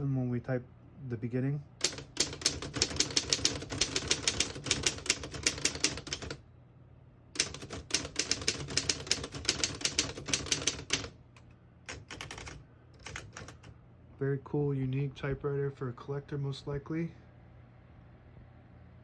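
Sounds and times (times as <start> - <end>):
manual typewriter typing: 1.8 - 6.4, 7.4 - 11.1, 11.9 - 13.7.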